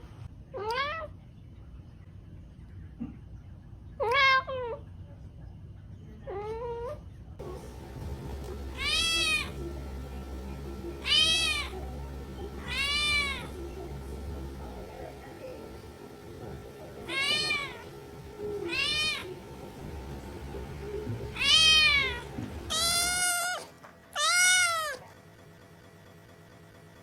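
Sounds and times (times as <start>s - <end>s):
low steady hum: 7.1s - 24.9s
kittens meowing: 7.7s - 25.0s.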